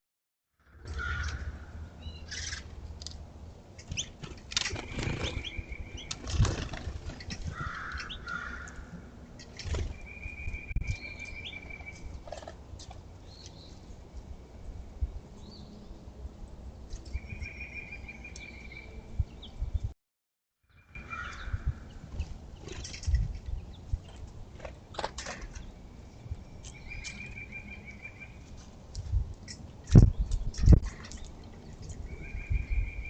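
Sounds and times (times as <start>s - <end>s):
birds chirping: 3.7s - 16.1s, 16.9s - 19.9s, 20.7s - 28.6s, 29.4s - 33.0s
bird trill: 3.8s - 6.4s, 7.3s - 8.9s, 9.7s - 12.2s, 17.1s - 19.6s, 20.7s - 24.2s, 25.5s - 28.5s, 31.8s - 33.0s
bird wings fluttering: 4.0s - 7.7s.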